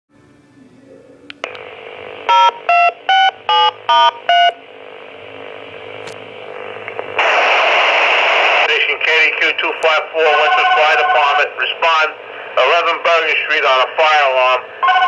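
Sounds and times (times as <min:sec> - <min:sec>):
radio click: 0:01.3 - 0:01.8, 0:05.9 - 0:08.8
radio hiss burst: 0:05.7 - 0:14.8
touch-tone beeps over radio: 0:10.3 - 0:11.4.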